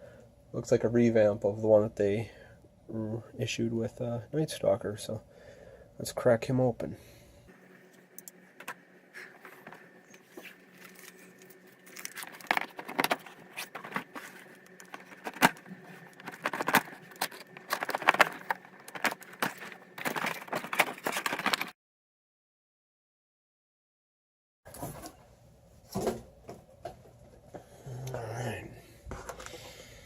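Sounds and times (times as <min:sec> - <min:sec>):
packaging rustling and crinkling: 0:08.6 - 0:21.8.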